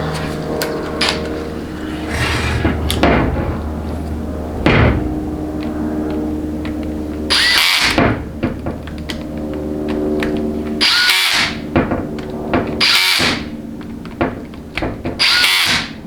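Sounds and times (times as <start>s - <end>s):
steady hum: 0.8s - 5.5s.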